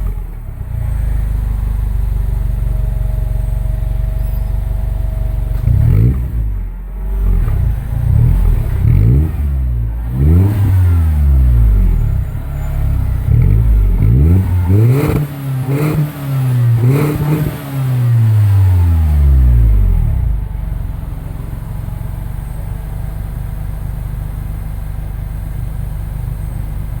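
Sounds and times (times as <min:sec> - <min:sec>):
car engine revving: 0:05.4 - 0:21.5.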